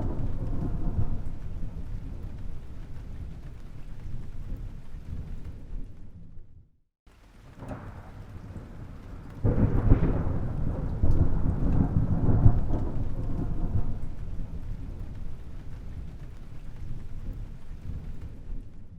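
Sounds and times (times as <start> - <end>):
rolling thunder: 0.0 - 6.5, 7.3 - 18.9.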